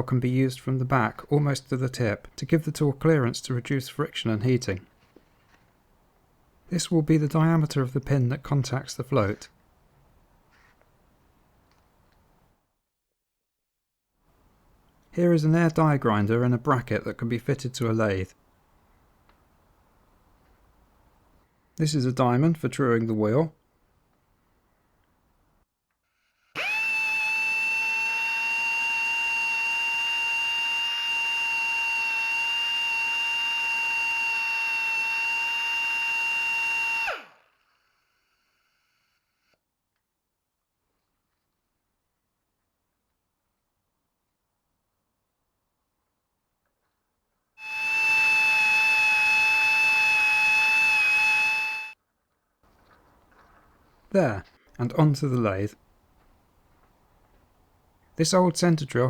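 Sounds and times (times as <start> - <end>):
air die grinder whining: 26.6 - 37.4, 47.6 - 52.0.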